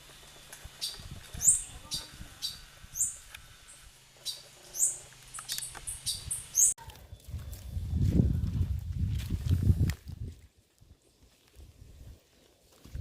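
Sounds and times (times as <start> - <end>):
birds chirping: 0.0 - 8.0.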